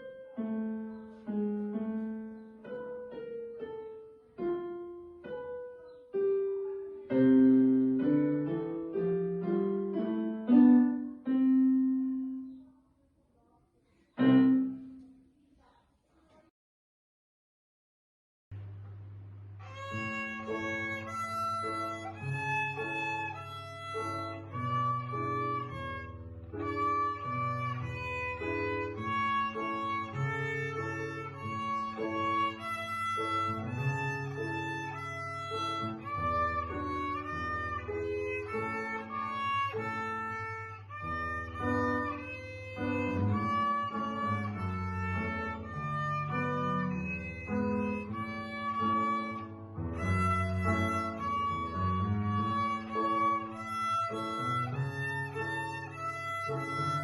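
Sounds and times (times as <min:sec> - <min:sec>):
bowed string melody: 0:19.6 - 0:57.0.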